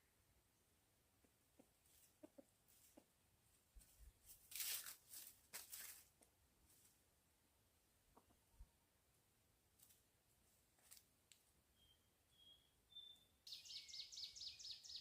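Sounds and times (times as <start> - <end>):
soft rustling or scraping: 3.7 - 7.0.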